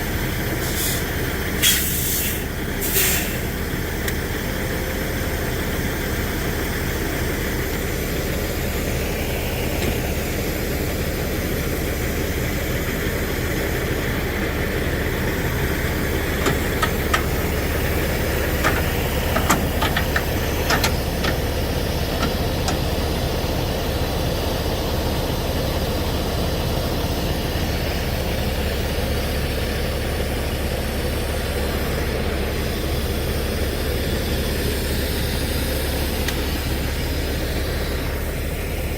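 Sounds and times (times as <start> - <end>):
diesel truck engine rumbling: 0.0 - 38.9.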